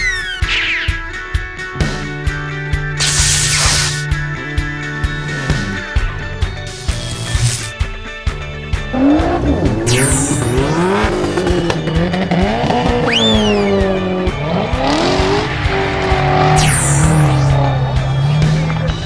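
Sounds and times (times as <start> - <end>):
background music with beat: 0.0 - 19.0
race car engines revving: 8.9 - 19.0
tire squeal: 10.0 - 18.9.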